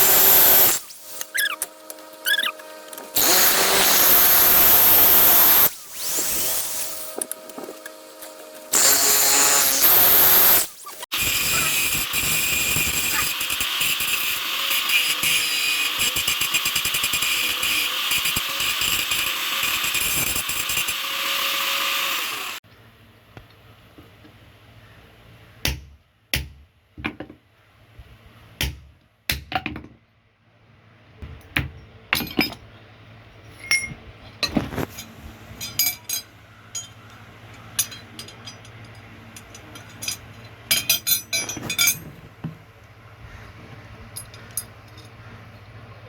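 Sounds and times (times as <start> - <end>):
metal tools clinking and knocking: 32.1 - 32.7, 33.5 - 42.2, 44.1 - 45.2.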